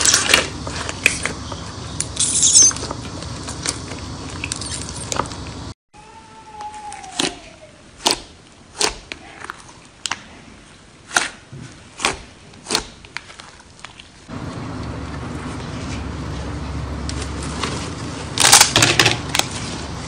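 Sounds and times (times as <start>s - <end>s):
slime squishing: 0.0s - 5.7s, 6.6s - 14.3s.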